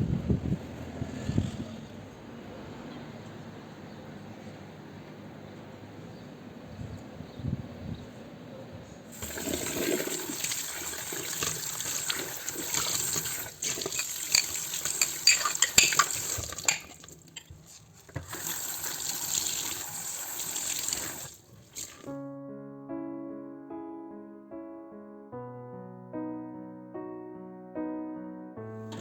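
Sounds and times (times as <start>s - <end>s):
tap water running into sink: 9.2s - 17.4s, 18.1s - 22.1s.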